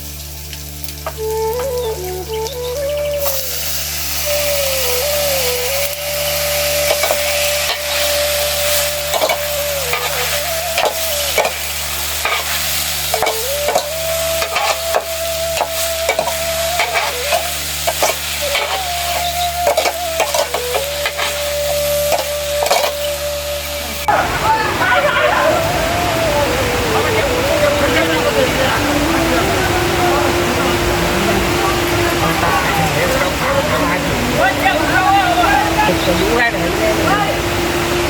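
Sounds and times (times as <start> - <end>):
food sizzling in a pan: 0.0 - 36.5
spoon scraping a pan: 9.1 - 15.0, 15.6 - 21.5, 22.1 - 23.1.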